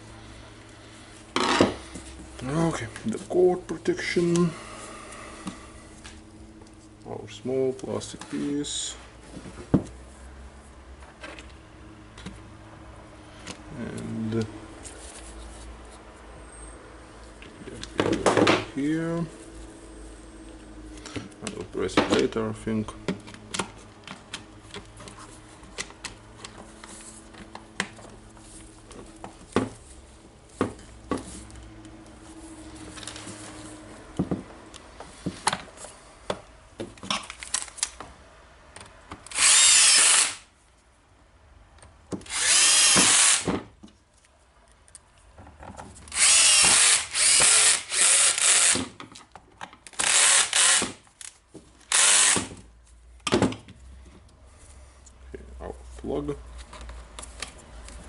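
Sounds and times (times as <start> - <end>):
cordless screwdriver running: 39.3 - 40.4, 42.3 - 43.5, 46.1 - 48.9, 49.9 - 51.0, 51.9 - 52.5.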